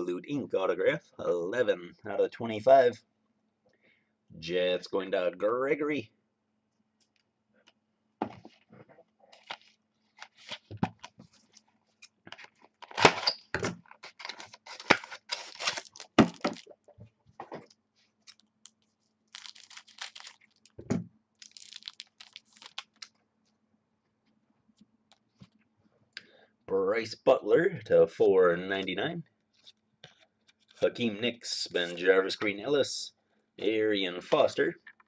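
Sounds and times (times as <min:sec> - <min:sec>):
card pack wrappers tearing: 0:12.8 - 0:16.8, 0:18.2 - 0:20.8, 0:21.4 - 0:23.2.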